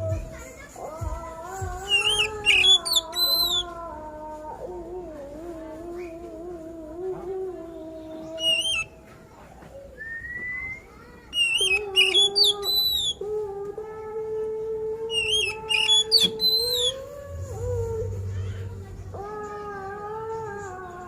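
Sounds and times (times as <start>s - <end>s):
bird singing sliding whistles: 1.9s - 3.6s, 8.4s - 8.9s, 10.0s - 13.2s, 15.1s - 17.0s
low drawn-out note: 17.0s - 20.2s.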